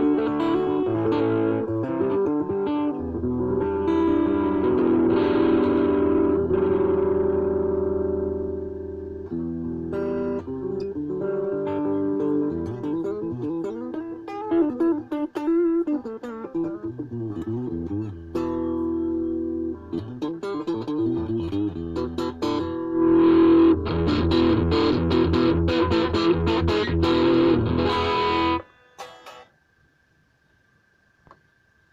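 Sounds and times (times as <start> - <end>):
electric guitar playing: 0.0 - 29.4.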